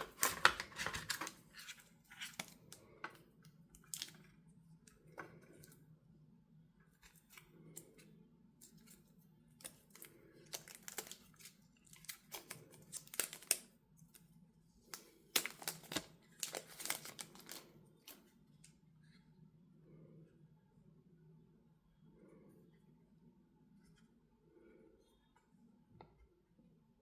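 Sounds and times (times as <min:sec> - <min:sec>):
packaging rustling and crinkling: 0:00.0 - 0:03.1, 0:09.6 - 0:13.7, 0:14.9 - 0:18.3.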